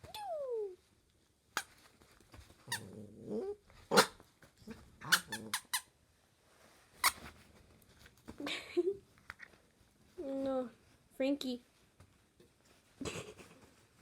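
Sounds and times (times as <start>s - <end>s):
puppy growling: 2.7s - 5.7s.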